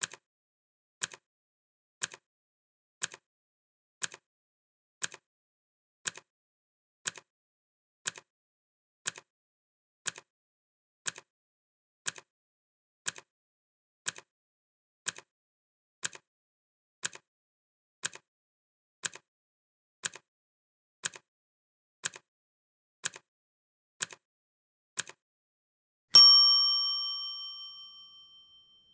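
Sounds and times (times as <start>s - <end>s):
bell ding: 26.2s - 28.6s.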